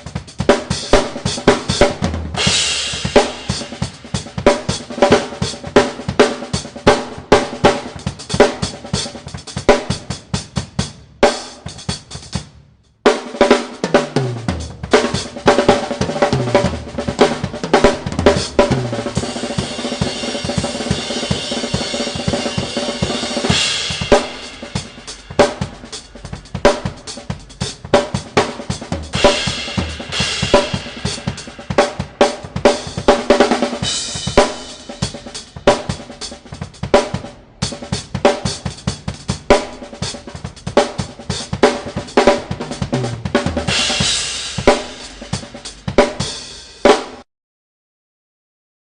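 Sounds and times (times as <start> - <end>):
drum kit solo: 0.0 - 47.3.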